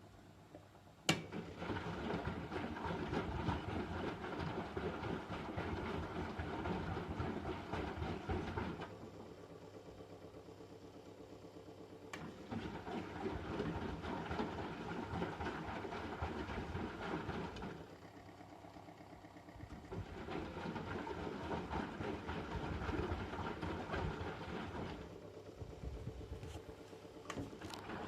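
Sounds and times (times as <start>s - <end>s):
washing machine drum tumbling: 12.2s - 17.8s, 19.7s - 26.4s.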